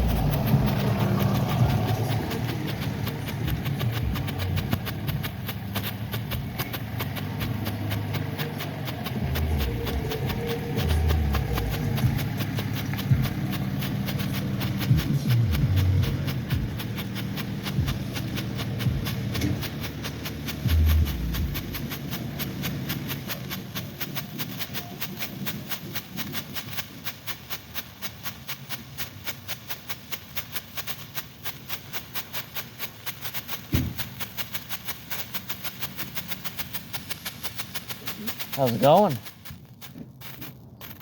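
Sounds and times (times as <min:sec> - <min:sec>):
dull thumps: 0:00.0 - 0:23.5, 0:33.6 - 0:34.5
strobe firework crackling pops: 0:00.0 - 0:41.0.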